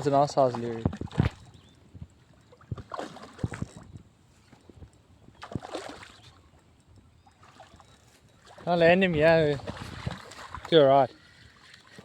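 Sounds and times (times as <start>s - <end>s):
fish splashing in water: 5.4s - 6.3s.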